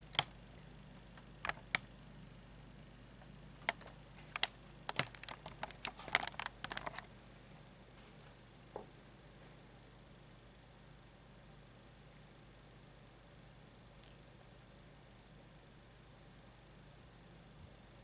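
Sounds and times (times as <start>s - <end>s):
sharp clicks and taps: 1.2s - 1.9s, 3.6s - 7.1s.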